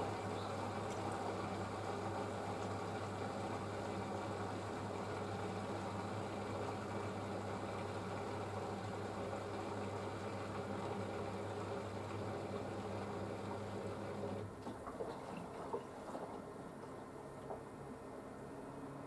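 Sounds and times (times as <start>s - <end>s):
washing machine motor hum: 0.0s - 19.0s
water sloshing and dripping: 14.5s - 18.1s.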